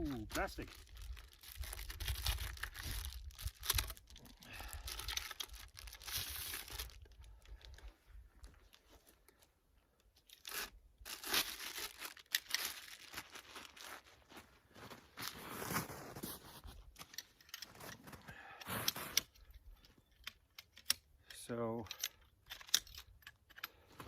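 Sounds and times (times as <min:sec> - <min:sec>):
plastic crinkling: 0:00.0 - 0:08.8, 0:10.4 - 0:16.4.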